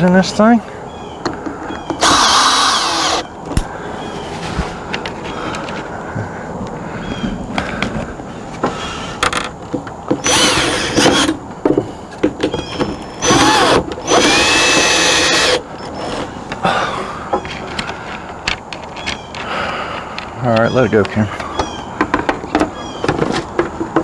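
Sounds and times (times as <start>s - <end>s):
power drill driving screws: 1.9s - 3.7s, 10.2s - 11.4s, 12.8s - 16.2s.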